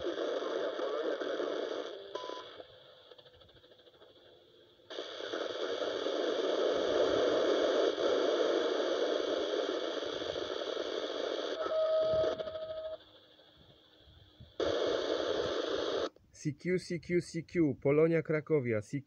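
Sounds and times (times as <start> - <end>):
radio static hiss: 0.0 - 19.0
short steady beep: 2.2 - 2.5.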